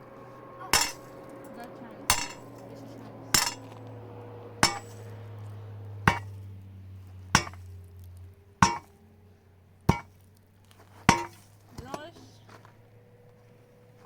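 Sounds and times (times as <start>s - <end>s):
low steady hum: 0.0s - 13.9s
hammer striking metal: 0.7s - 1.1s, 2.1s - 2.7s, 3.3s - 3.8s, 4.6s - 5.0s, 6.1s - 6.4s, 7.4s - 7.7s, 8.6s - 8.9s, 9.9s - 10.1s, 11.1s - 12.1s.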